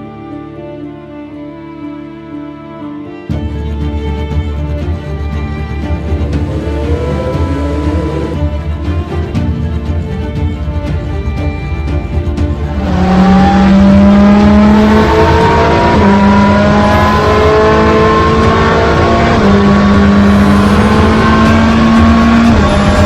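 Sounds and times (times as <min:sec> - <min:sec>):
race car engine accelerating: 0:06.0 - 0:08.6, 0:12.6 - 0:23.0.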